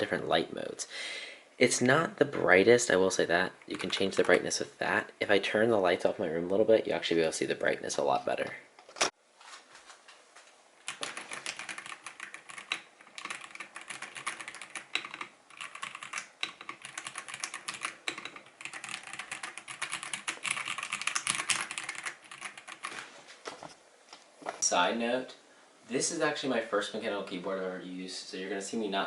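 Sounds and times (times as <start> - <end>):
fast typing on mechanical keyboard: 3.7 - 4.5, 10.9 - 23.0.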